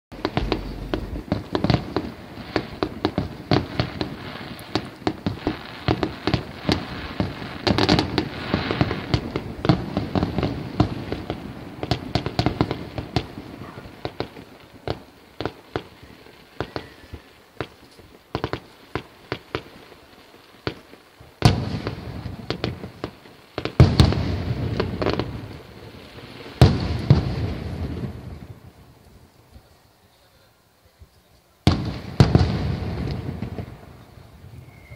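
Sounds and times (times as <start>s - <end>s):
loud fireworks booms: 0.1s - 30.3s, 30.9s - 34.9s
fireworks bangs and crackles: 0.1s - 34.9s.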